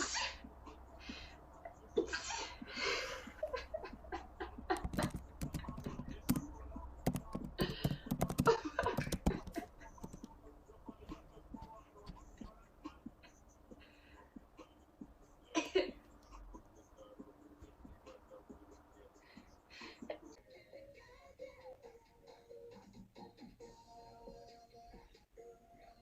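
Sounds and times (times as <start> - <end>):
woman laughing: 1.8 - 5.3, 8.4 - 10.0
sharp clicks: 4.8 - 10.4
panting breaths: 12.1 - 14.8.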